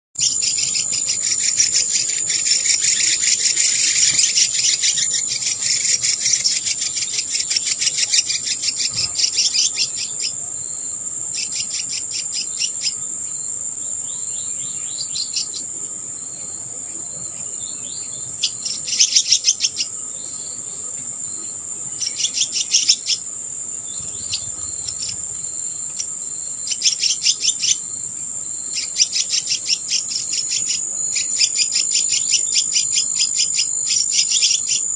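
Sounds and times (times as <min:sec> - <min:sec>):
high-pitched insect trill: 0:00.2 - 0:34.9
rapid repeated chirping: 0:00.2 - 0:34.9.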